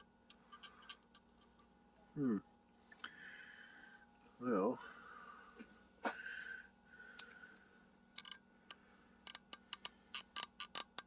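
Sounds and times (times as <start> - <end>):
small metal clicks: 0.0 - 1.7, 8.1 - 11.0.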